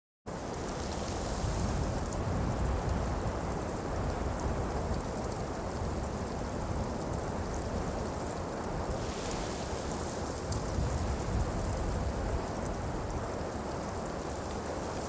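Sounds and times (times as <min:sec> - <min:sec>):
dense steady hiss: 0:00.3 - 0:03.8, 0:08.7 - 0:15.0.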